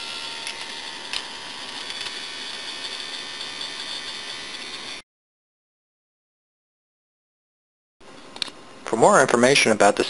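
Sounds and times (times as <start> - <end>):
electric motor whining: 0.0 - 5.0.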